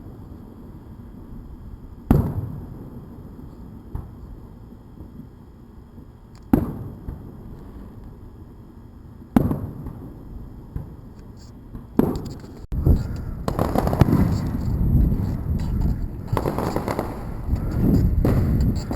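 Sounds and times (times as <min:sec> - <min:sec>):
rapid firework bangs and crackling: 0:00.0 - 0:18.9
firework booms: 0:02.0 - 0:05.2, 0:06.5 - 0:08.0, 0:09.3 - 0:11.1, 0:11.7 - 0:18.9.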